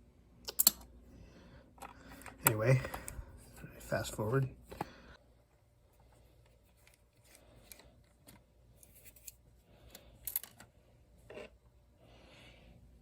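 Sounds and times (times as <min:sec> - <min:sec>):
small parts clicking and rustling: 0:00.4 - 0:00.9, 0:06.0 - 0:11.5.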